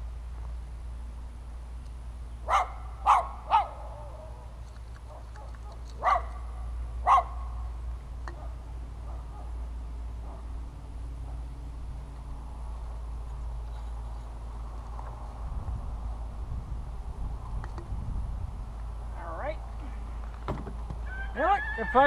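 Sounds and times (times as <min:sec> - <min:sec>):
dog barking: 0:02.5 - 0:04.4, 0:05.1 - 0:07.5, 0:08.4 - 0:09.6, 0:10.2 - 0:10.5.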